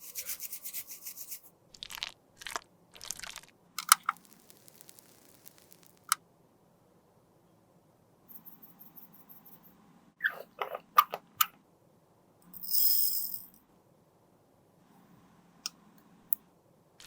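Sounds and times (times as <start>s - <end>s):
hiss: 4.1s - 6.1s.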